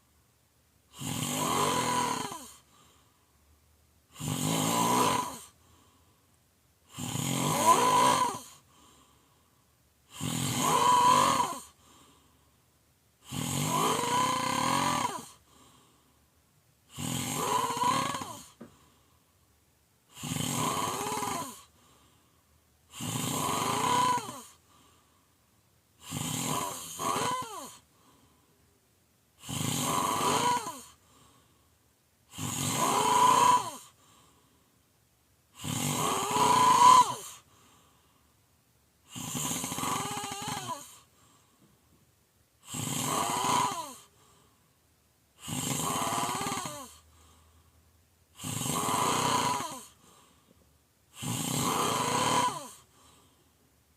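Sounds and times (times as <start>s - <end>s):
person snoring loudly: 0.9s - 2.6s, 4.1s - 5.6s, 6.9s - 8.6s, 10.1s - 11.8s, 13.2s - 15.4s, 16.9s - 18.6s, 20.1s - 21.7s, 22.9s - 24.6s, 26.0s - 27.8s, 29.4s - 31.0s, 32.3s - 34.0s, 35.6s - 37.5s, 39.0s - 41.1s, 42.6s - 44.2s, 45.4s - 47.1s, 48.3s - 50.1s, 51.1s - 53.2s.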